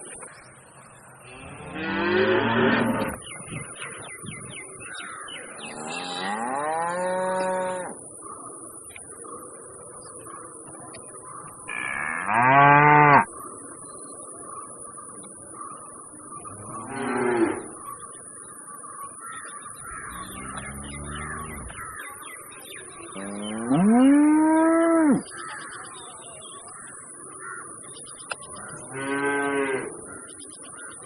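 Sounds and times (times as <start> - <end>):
bull mooing: 20.0 - 21.8.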